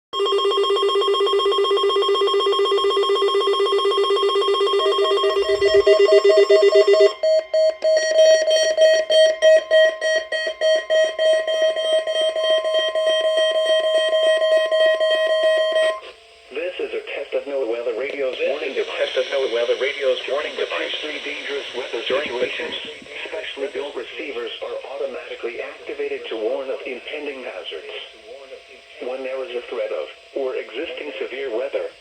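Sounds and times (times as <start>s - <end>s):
pulsing electronic alarm tone: 0.2s - 16.1s.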